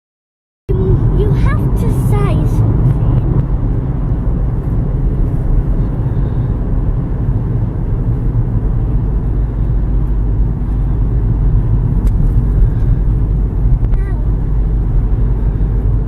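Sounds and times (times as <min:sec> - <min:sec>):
car engine and road noise: 0:00.7 - 0:16.0.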